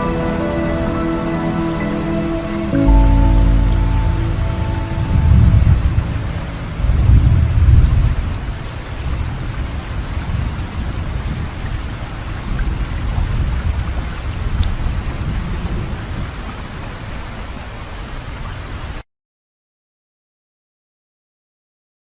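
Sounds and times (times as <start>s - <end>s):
low rumble: 0.0s - 9.4s
rain hiss: 0.0s - 19.0s.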